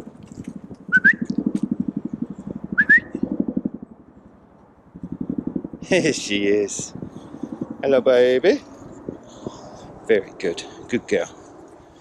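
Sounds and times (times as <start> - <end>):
low pulsing rumble: 0.0 - 12.0
short rising whistles: 0.9 - 1.4, 2.8 - 3.3.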